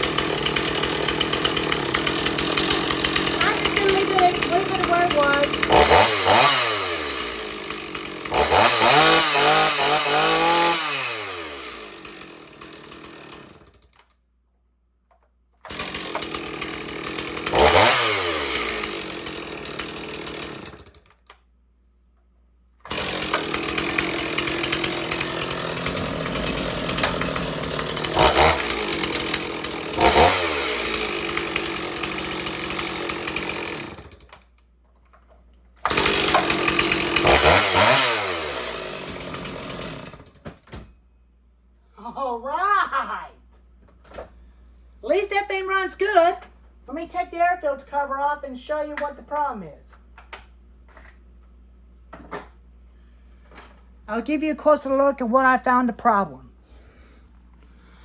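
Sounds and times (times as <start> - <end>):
chainsaw revving: 0.0 - 13.9, 15.6 - 21.2, 22.8 - 34.5, 35.8 - 40.4.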